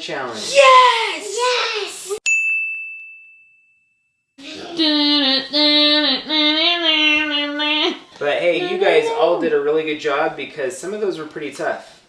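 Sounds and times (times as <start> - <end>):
bright ringing ding: 2.2 - 4.2.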